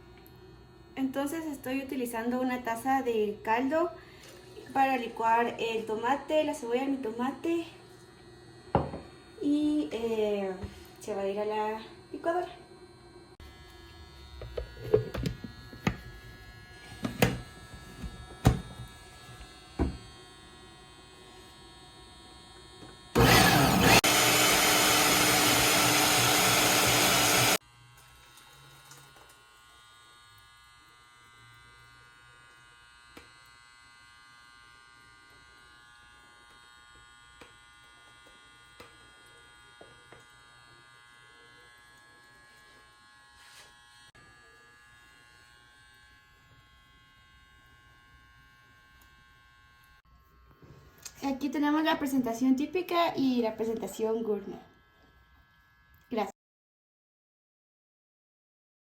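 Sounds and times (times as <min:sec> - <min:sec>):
blender running loudly: 0:05.8 - 0:50.4.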